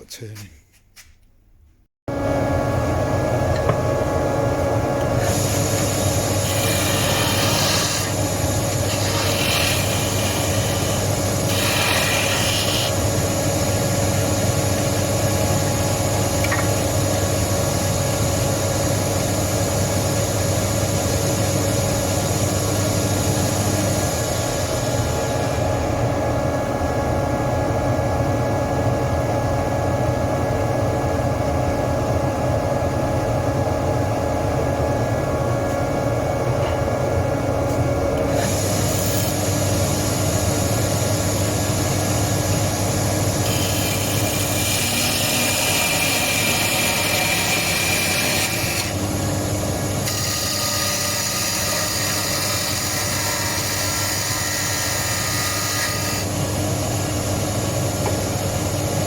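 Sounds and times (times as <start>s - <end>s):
lathe motor humming: 4.8s - 19.2s, 38.2s - 56.4s
tool cutting spinning wood: 5.0s - 17.9s, 38.2s - 56.4s.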